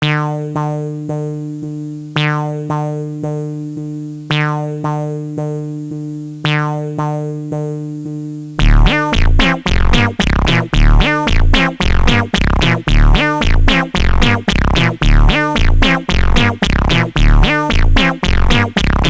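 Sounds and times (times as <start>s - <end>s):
electronic beat with bass and drums: 8.6s - 19.0s
synthesizer sustained chords: 8.6s - 19.0s.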